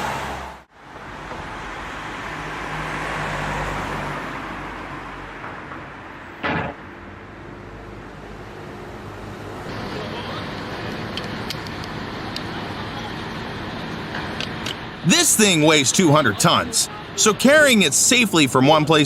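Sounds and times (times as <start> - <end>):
road traffic noise: 0.0 - 19.0
truck engine running: 9.7 - 19.0.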